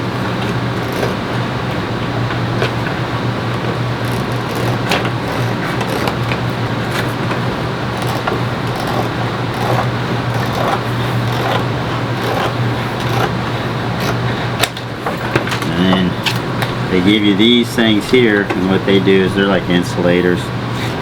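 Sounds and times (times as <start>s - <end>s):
low machine hum: 0.0s - 21.0s.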